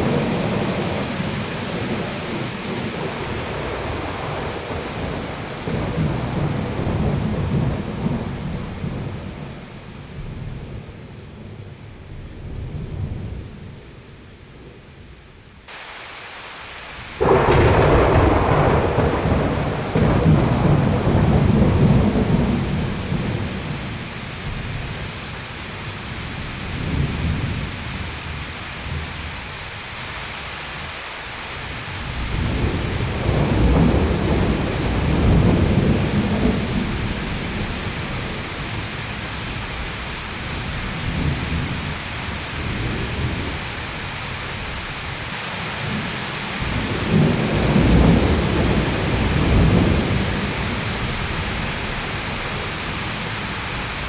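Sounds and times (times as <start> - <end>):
thunder rolling: 0.0 - 13.7, 17.1 - 25.1, 31.9 - 44.8, 46.6 - 54.0
steady rain: 0.0 - 54.0.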